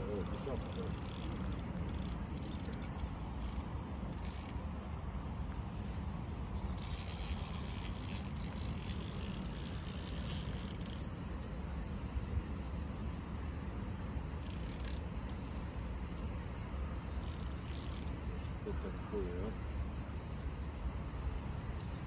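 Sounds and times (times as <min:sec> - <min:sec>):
fishing reel ticking: 0:00.0 - 0:04.6, 0:06.7 - 0:11.1, 0:14.4 - 0:15.4, 0:17.2 - 0:18.2.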